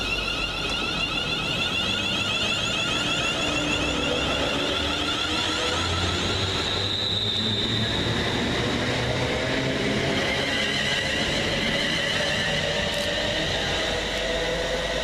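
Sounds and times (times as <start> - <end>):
train traction motors whining: 0.0 - 15.0.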